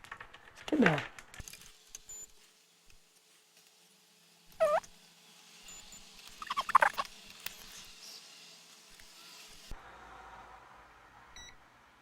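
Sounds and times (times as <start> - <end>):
short high squeak: 4.6 - 4.8.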